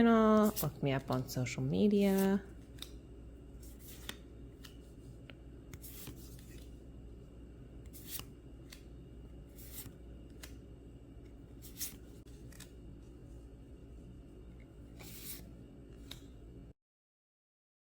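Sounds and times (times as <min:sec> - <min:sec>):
papery card swishes: 0:03.6 - 0:05.0, 0:05.7 - 0:06.8, 0:07.9 - 0:08.9, 0:09.5 - 0:10.6, 0:11.6 - 0:12.8, 0:15.0 - 0:16.3.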